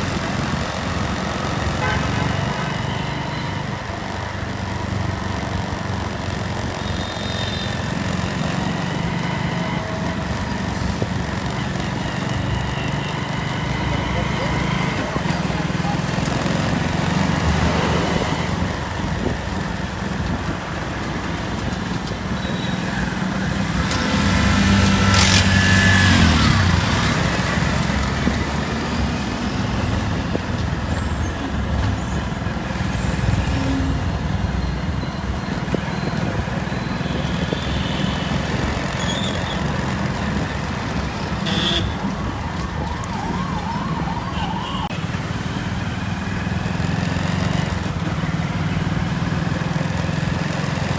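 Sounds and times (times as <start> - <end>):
traffic hum: 0.0 - 50.9
vehicle horn: 1.8 - 3.6, 41.4 - 42.0.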